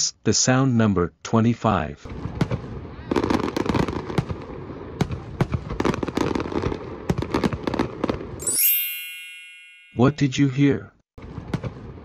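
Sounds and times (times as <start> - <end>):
fireworks cracking and banging: 2.1 - 8.4, 11.2 - 12.0
bright chime ringing: 8.4 - 10.4.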